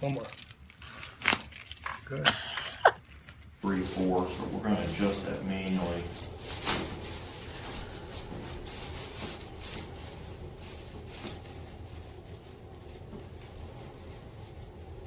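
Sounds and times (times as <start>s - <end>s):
low room hum: 0.0s - 15.0s
hands and clothing rustling: 3.6s - 15.0s.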